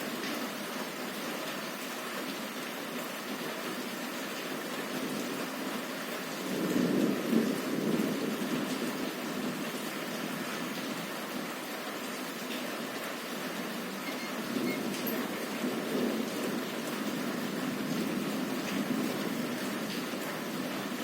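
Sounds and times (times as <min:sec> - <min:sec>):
heavy rain on a window: 0:00.0 - 0:21.0
thunder rolling: 0:06.5 - 0:09.6, 0:14.4 - 0:19.6.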